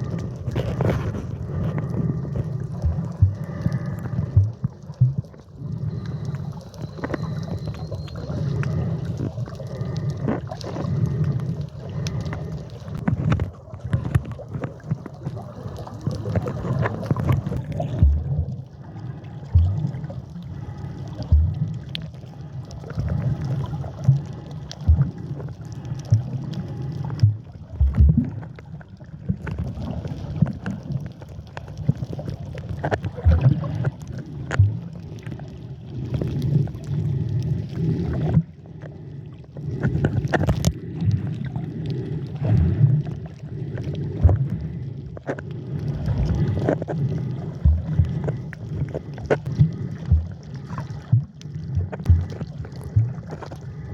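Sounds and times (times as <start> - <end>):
water sloshing and gurgling: 0.0 - 53.9
low underwater thumps: 17.9 - 18.5, 21.3 - 21.7, 24.9 - 25.2, 27.2 - 28.4, 47.6 - 48.2, 51.1 - 53.3.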